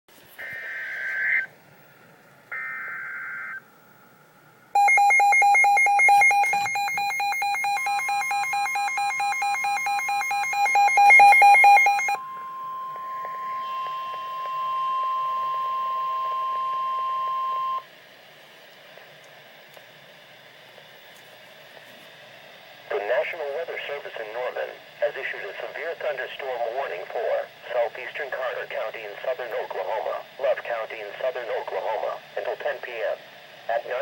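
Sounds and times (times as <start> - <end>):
steady warning tone: 0.4 - 18.0
rapidly pulsing electronic beep: 4.8 - 17.8
warbling data bursts: 4.8 - 17.8.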